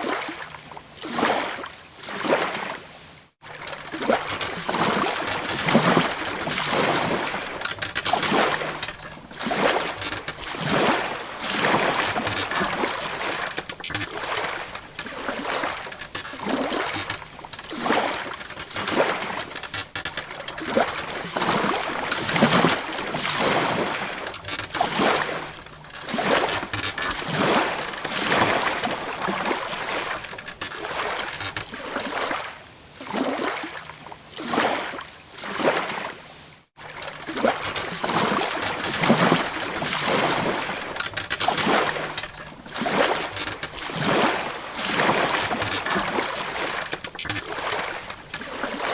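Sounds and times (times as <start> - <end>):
sea water splashing against hull: 3.4 - 36.2, 36.8 - 48.9.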